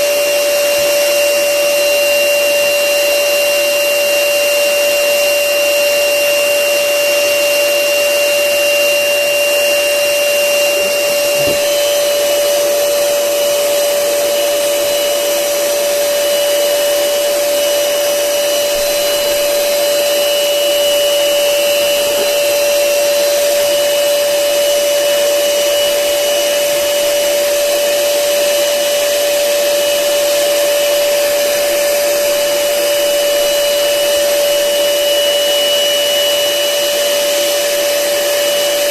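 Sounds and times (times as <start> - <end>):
electric air blower running: 0.0 - 38.9.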